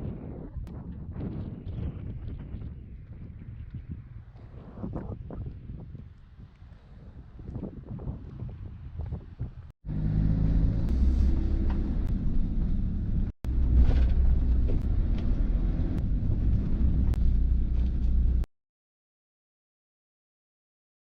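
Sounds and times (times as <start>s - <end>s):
wind noise: 0.0s - 18.5s
boat engine rumbling: 9.8s - 18.4s.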